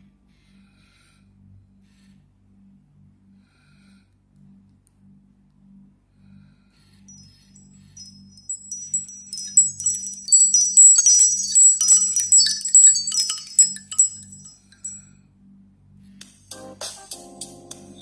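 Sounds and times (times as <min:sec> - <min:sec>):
wind chime ringtone: 0:07.1 - 0:15.0.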